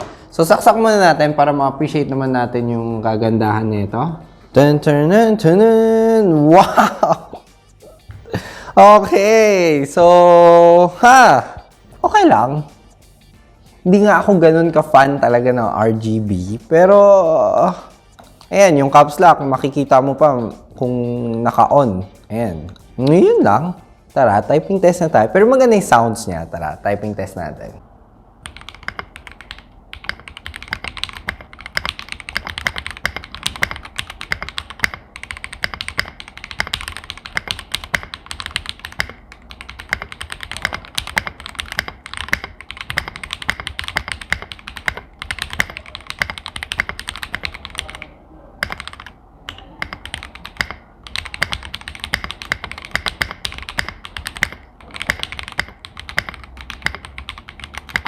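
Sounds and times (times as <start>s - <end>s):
mechanical keyboard typing: 28.4s - 58.0s.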